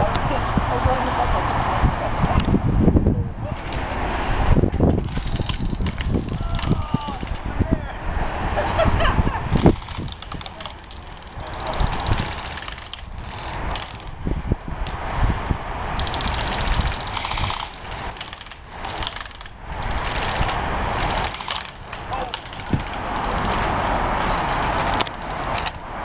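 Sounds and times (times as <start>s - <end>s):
wind rumble: 0.0s - 26.0s
rapid rattling clicks: 4.8s - 7.5s, 9.5s - 14.2s, 16.0s - 25.9s.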